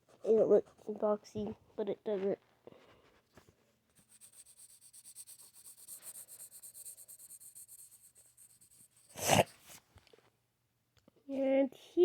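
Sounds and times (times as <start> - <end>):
drawing tool scribbling: 4.0 - 9.8.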